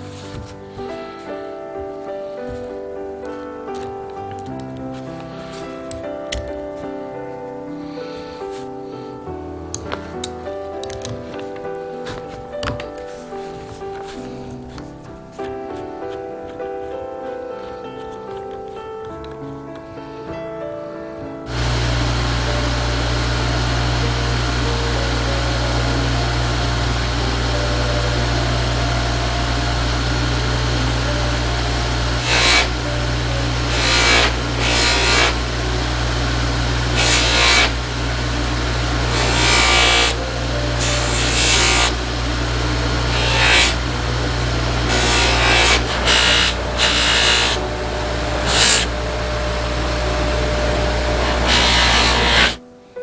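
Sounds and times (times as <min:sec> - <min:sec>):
bench buffer motor running: 0:21.5 - 0:52.6
knife hissing on buffing wheel: 0:21.5 - 0:52.6.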